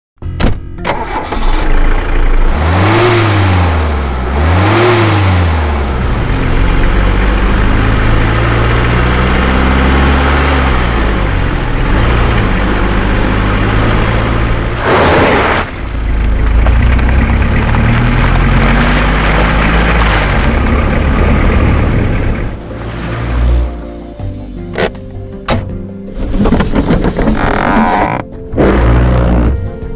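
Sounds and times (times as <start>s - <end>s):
car engine starting and revving: 0.9s - 24.0s, 26.1s - 29.9s
car engine idling: 15.6s - 19.5s.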